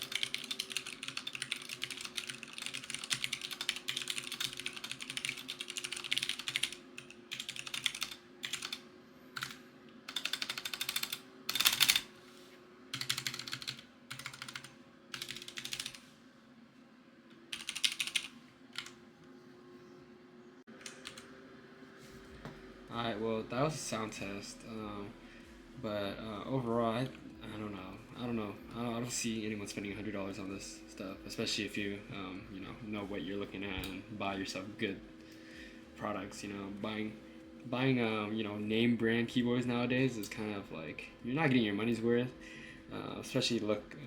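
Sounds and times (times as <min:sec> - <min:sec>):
typing on mechanical keyboard: 0:00.0 - 0:08.8, 0:09.4 - 0:12.0, 0:13.0 - 0:16.0, 0:17.5 - 0:18.9.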